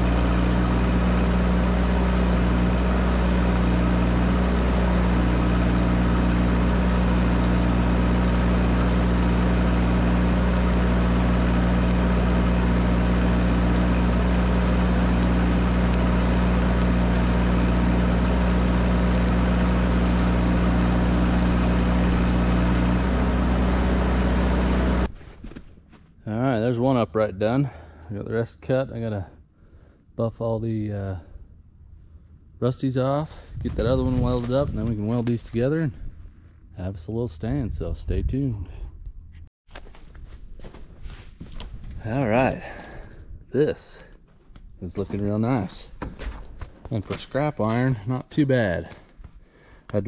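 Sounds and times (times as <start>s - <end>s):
stick welding crackle: 0.0s - 25.1s
welder engine running: 0.0s - 25.1s, 33.3s - 35.8s.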